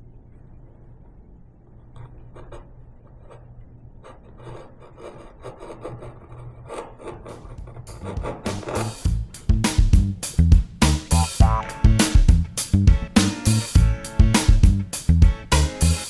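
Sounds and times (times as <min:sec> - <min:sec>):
hand tool rubbing across wood: 0:04.1 - 0:09.2.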